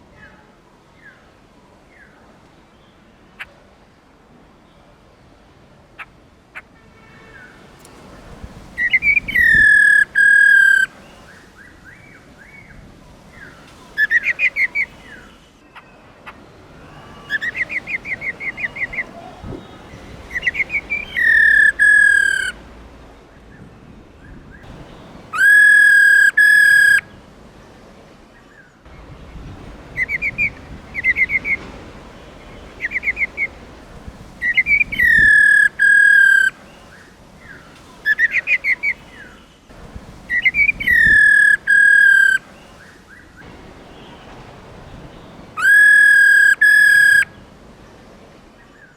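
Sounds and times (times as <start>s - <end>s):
bird chattering notes: 8.8s - 10.9s, 20.3s - 22.6s, 25.4s - 27.0s, 30.0s - 31.6s, 34.4s - 36.5s, 40.4s - 42.4s, 45.6s - 47.2s
bird whistling calls: 8.8s - 10.9s, 13.4s - 15.3s, 16.9s - 22.6s, 24.6s - 27.0s, 30.0s - 31.7s, 32.7s - 33.6s, 34.4s - 36.6s, 40.3s - 43.2s, 45.6s - 47.3s.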